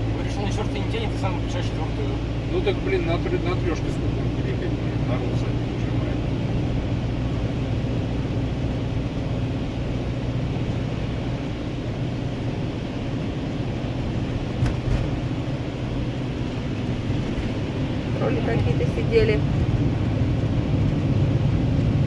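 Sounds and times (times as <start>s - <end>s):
car engine hum from cabin: 0.0s - 22.0s.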